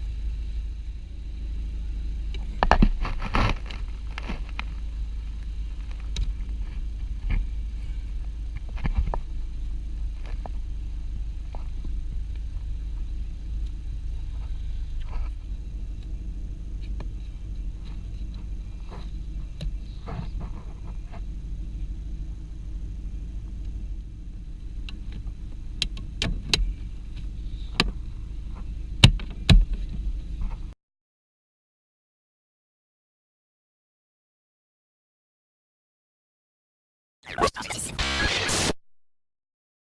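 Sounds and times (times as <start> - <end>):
steady low hum: 0.0 - 30.8
steady low rumble: 0.0 - 30.8.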